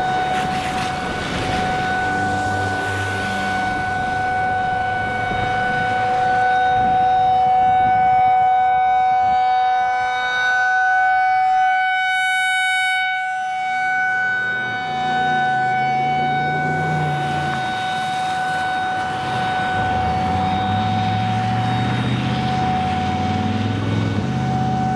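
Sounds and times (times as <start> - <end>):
low rumble: 0.0 - 8.0
warning siren two-tone: 0.0 - 24.9.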